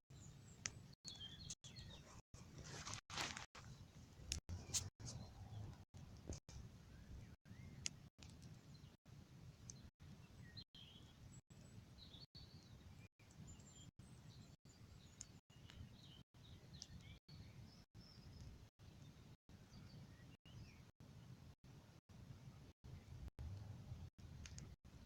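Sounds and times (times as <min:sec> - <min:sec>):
bonfire crackling and popping: 0:07.8 - 0:08.6, 0:24.2 - 0:24.8.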